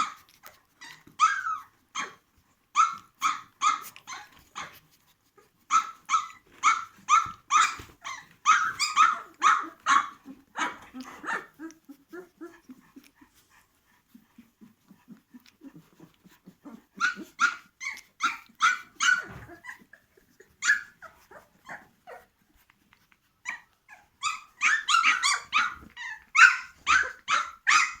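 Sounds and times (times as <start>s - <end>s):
puppies yelping: 0.8s - 2.2s, 5.7s - 12.6s, 16.0s - 22.3s, 23.5s - 28.0s.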